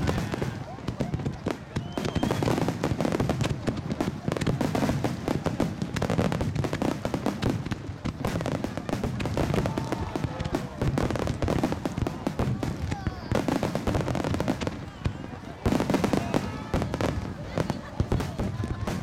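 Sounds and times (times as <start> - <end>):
firework bursts and bangs: 0.0 - 19.0.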